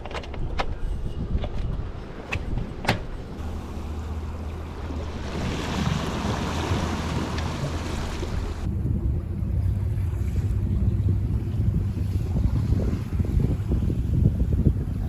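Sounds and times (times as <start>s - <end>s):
rushing water and wind: 0.0s - 15.0s.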